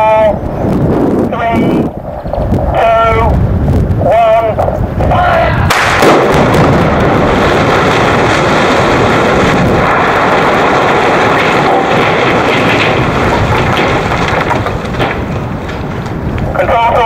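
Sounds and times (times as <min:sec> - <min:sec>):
building collapsing roar: 0:00.0 - 0:17.0
debris crashing down: 0:05.1 - 0:17.0.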